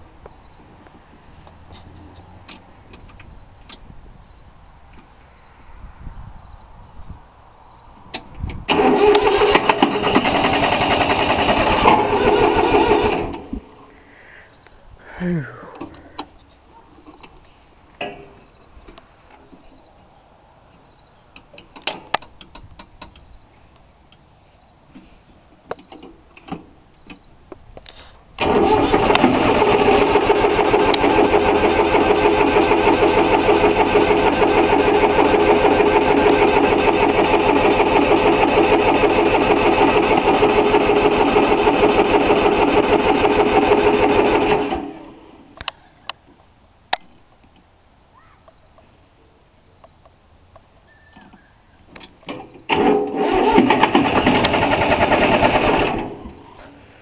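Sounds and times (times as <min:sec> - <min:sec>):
starter motor cranking engine: 0:08.7 - 0:13.6, 0:28.4 - 0:45.2, 0:52.6 - 0:56.4.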